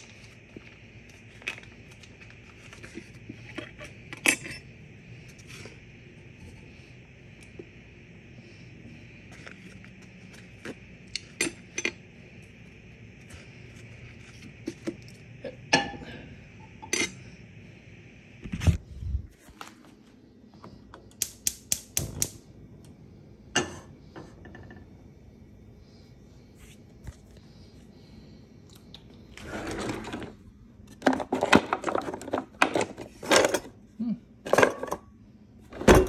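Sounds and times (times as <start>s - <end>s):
pans and utensils clattering: 34.5s - 35.1s.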